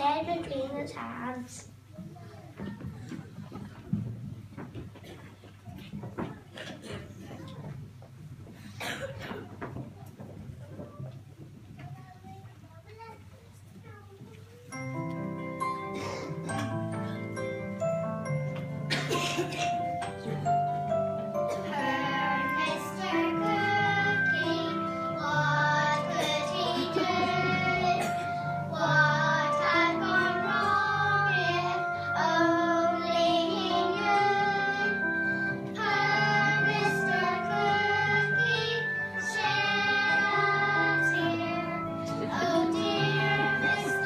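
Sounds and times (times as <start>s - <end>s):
instrumental accompaniment: 14.6s - 44.0s
children singing: 21.5s - 44.0s.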